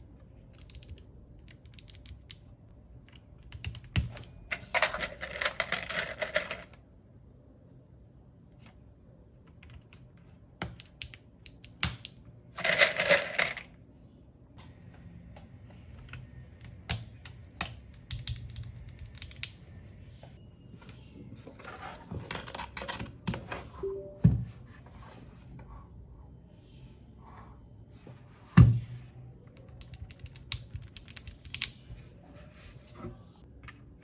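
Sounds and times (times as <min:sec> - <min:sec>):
mechanical keyboard clicking: 0:00.5 - 0:02.4, 0:16.9 - 0:19.6, 0:29.6 - 0:31.7.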